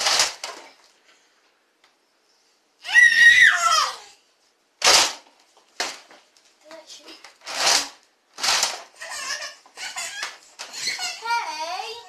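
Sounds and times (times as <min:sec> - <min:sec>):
child squealing: 0:02.8 - 0:04.2
toy blaster firing darts: 0:04.8 - 0:05.2, 0:07.5 - 0:08.8.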